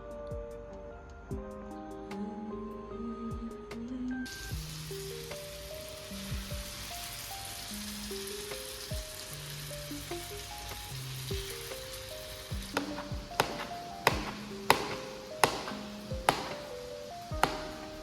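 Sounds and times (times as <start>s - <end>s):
background music: 0.0s - 18.0s
food sizzling in a pan: 4.3s - 18.0s.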